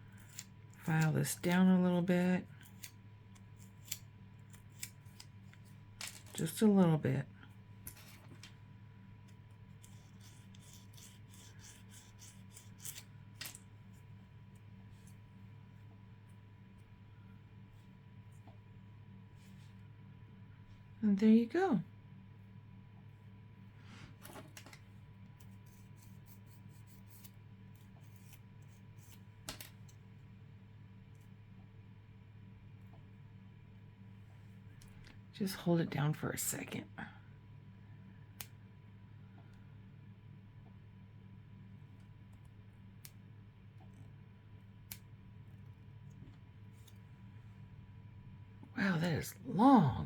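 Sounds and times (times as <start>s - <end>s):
low electrical hum: 0.0s - 50.0s
nail file scraping nail: 9.8s - 13.1s, 25.4s - 29.2s.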